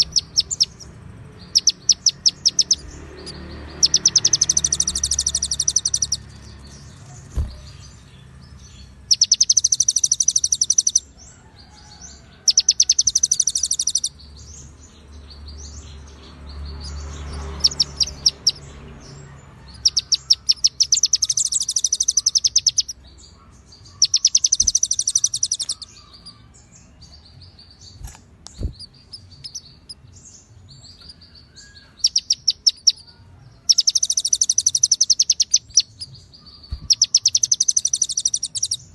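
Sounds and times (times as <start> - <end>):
soft bird chirps: 0.0 - 38.9
bird fast high rattling trills: 1.5 - 7.9, 9.1 - 11.1, 12.5 - 14.1, 19.8 - 23.0, 24.0 - 26.2, 33.7 - 38.8.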